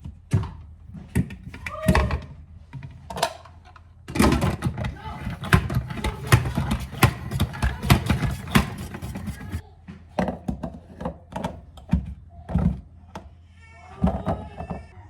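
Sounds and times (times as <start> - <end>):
irregular knocks and thunks: 4.1 - 9.6.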